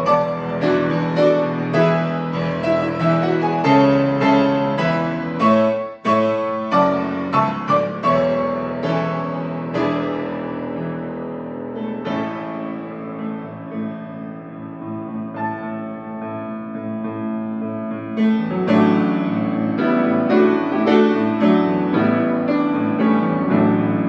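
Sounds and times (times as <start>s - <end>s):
piano playing chords: 0.0s - 24.0s.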